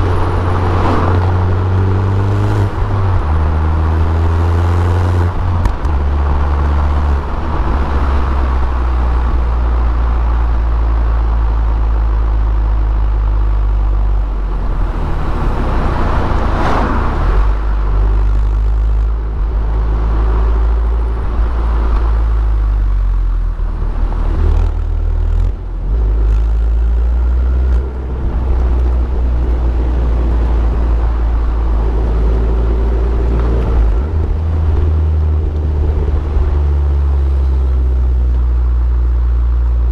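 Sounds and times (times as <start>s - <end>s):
car engine droning: 0.0s - 39.9s.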